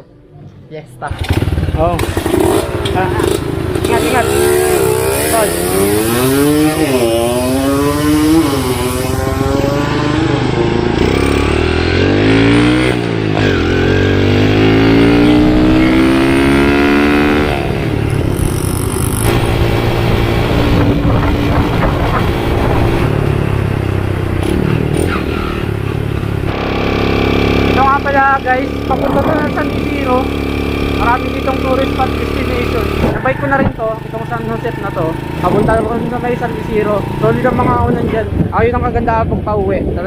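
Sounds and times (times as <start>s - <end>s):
motorcycle engine accelerating: 1.0s - 40.0s.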